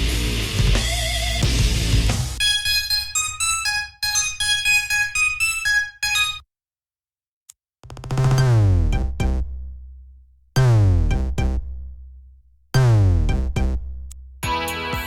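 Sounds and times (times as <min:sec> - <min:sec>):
electronic ringtone loop: 0:02.4 - 0:06.4, 0:08.2 - 0:09.4
synth ringtone notes: 0:02.4 - 0:06.4, 0:08.2 - 0:09.5.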